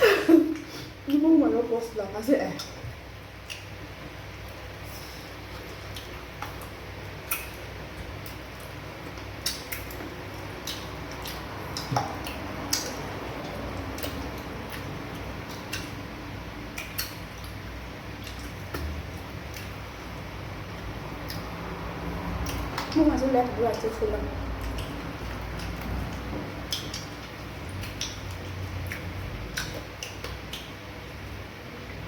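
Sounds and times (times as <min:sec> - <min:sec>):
low steady hum: 0:00.0 - 0:32.0.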